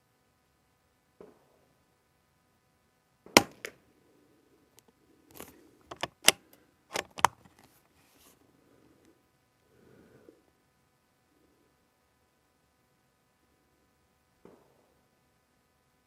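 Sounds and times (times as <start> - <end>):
suppressed rifle shot: 3.3 - 3.8
rifle bolt metallic clicks: 5.9 - 7.4.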